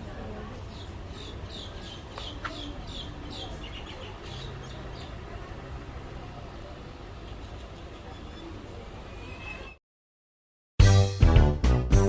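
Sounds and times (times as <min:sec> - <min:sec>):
low street rumble: 0:00.0 - 0:09.8
small birds chirping: 0:00.5 - 0:09.8.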